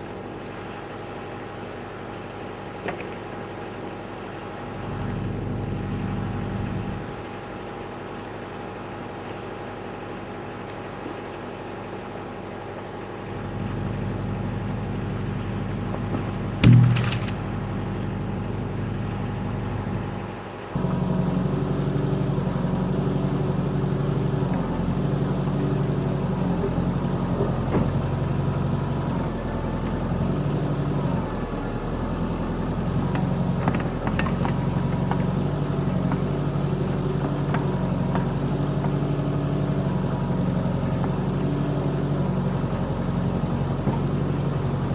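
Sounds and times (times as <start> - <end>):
backhoe engine running: 0.0 - 44.9
sharp knock: 16.6 - 17.4.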